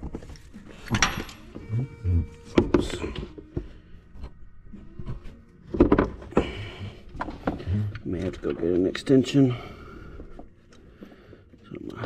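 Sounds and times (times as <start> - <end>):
metal socket clinking and knocking: 0.8 - 1.5.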